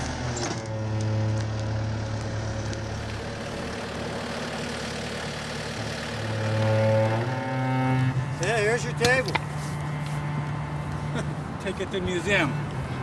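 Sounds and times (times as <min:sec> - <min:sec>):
large engine running: 0:00.0 - 0:13.0.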